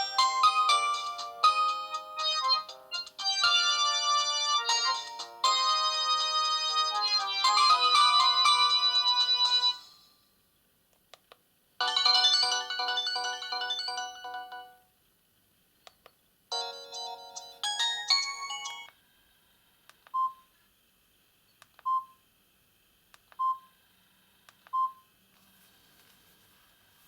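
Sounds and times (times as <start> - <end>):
polyphonic phone ringtone: 0.0 - 10.0, 11.8 - 14.8, 16.5 - 18.9
keypad beeps: 21.8 - 22.2, 24.7 - 25.0.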